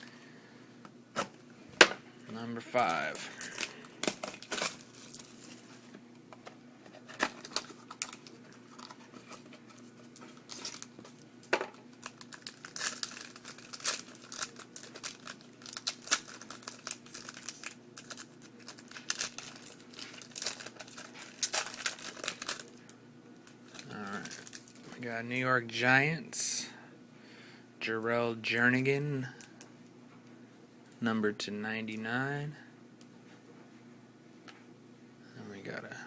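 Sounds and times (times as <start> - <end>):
plastic wrapper tearing and crinkling: 3.3 - 5.6, 7.0 - 25.0.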